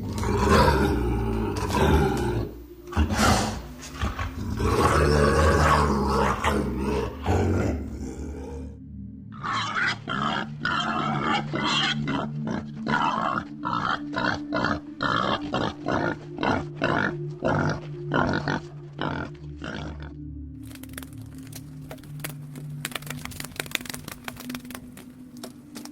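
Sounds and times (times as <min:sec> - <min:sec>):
pig grunting: 0:00.0 - 0:20.2
background music held notes: 0:00.0 - 0:25.9.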